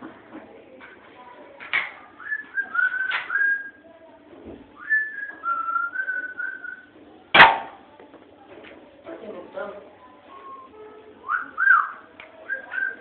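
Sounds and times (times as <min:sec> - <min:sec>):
person whistling a melody: 0:02.2 - 0:03.8, 0:04.8 - 0:06.8, 0:10.3 - 0:13.0
air gun shot: 0:07.4 - 0:07.8.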